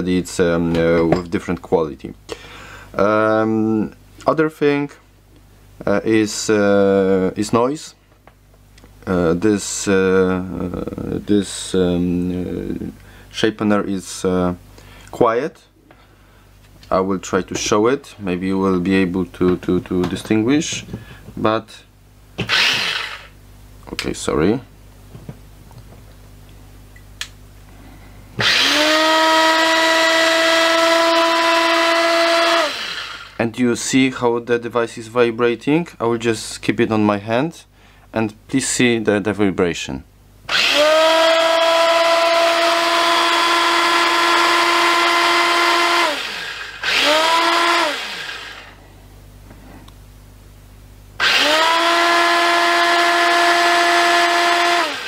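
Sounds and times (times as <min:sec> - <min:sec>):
electric grinder motor whine: 0:22.4 - 0:23.3, 0:28.4 - 0:33.4, 0:40.5 - 0:48.8, 0:51.2 - 0:55.0.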